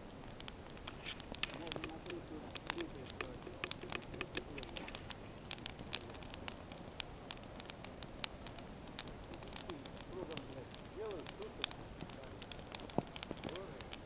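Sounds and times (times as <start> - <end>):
campfire crackling: 0.0 - 14.0
low steady hiss: 0.0 - 14.0.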